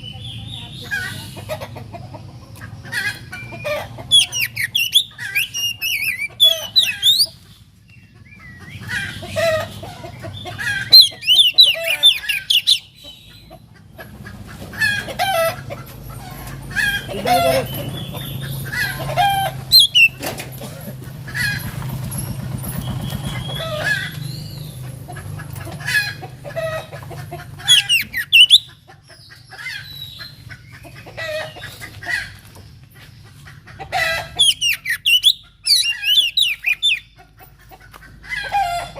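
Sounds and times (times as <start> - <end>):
bird singing chirps and whistles: 4.2 - 7.3, 11.0 - 12.9, 19.7 - 20.2, 27.7 - 28.7, 34.4 - 37.1.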